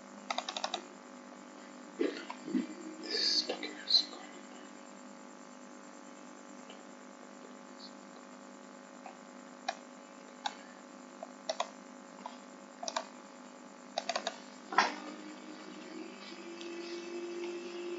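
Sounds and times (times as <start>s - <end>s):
sharp clicks: 11.2s - 11.8s, 12.8s - 13.1s, 14.0s - 14.4s.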